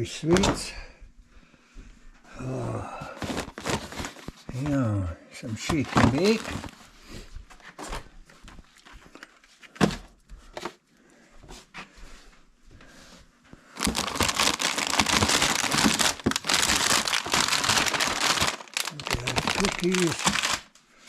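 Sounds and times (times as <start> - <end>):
plastic bags rustling: 3.1 - 4.7, 5.6 - 7.0, 13.7 - 20.7
plastic bags crinkling: 3.2 - 4.6, 5.8 - 6.8, 13.8 - 20.7.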